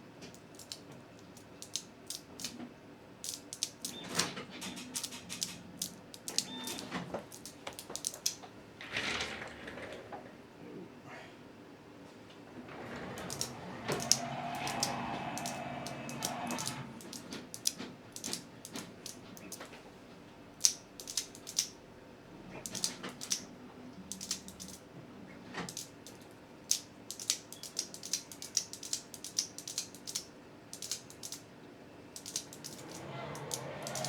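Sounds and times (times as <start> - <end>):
fidget slider clicking: 3.2 - 8.4, 12.9 - 19.6, 20.6 - 21.7, 22.6 - 23.4, 24.1 - 24.8, 32.2 - 34.0.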